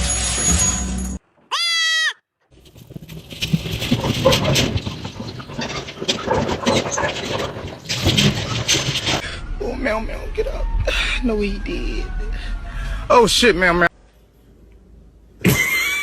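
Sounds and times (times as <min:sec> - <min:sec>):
high-pitched animal cry: 0:01.5 - 0:02.2
rustling clattering noise: 0:02.5 - 0:09.2.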